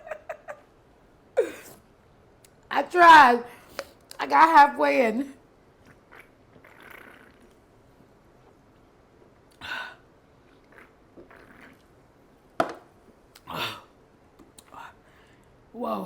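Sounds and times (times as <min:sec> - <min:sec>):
woman burping: 0:01.4 - 0:01.8.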